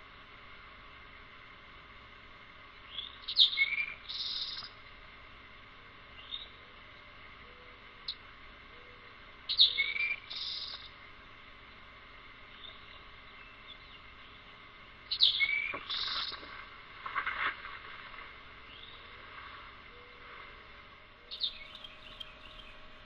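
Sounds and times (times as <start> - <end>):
faint bird chirps: 2.8 - 4.8, 7.4 - 11.0, 21.2 - 23.0
bird calling: 7.4 - 10.9, 21.2 - 23.0.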